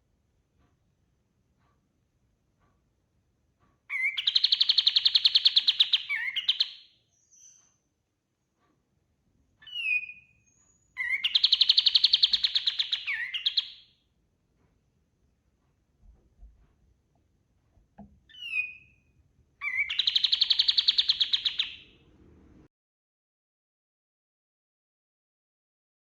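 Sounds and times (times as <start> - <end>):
bird singing fast trills: 3.9 - 7.8, 9.6 - 13.9, 18.3 - 19.0, 19.6 - 22.0.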